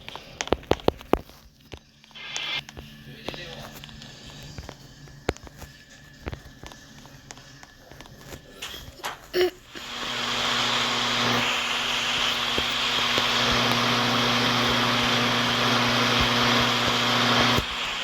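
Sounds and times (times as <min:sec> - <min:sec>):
electric appliance motor whirring: 0:02.0 - 0:02.8, 0:09.7 - 0:18.0.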